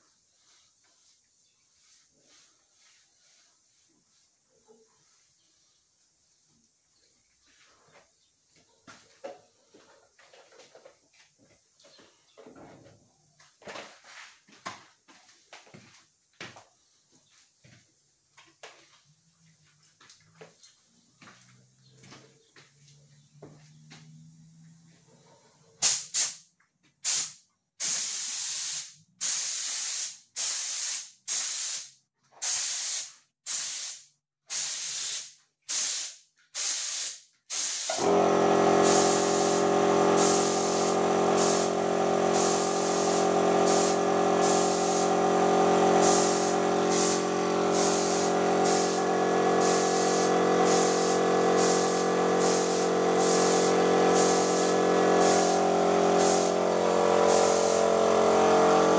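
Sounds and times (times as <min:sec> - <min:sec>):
spray paint hiss bursts: 0:25.8 - 0:26.4, 0:27.0 - 0:58.9.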